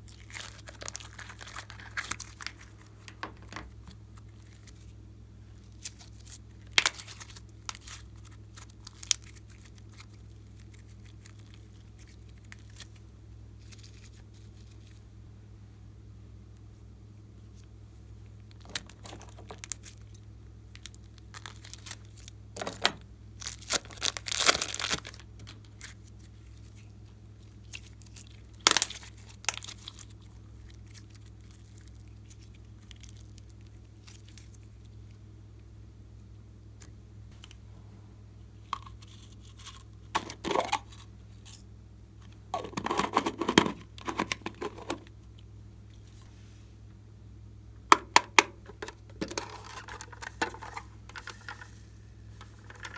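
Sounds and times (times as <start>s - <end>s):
slime crackling and tearing: 0.0s - 3.0s, 23.4s - 26.1s, 27.6s - 34.5s
faint low hum: 0.0s - 52.9s.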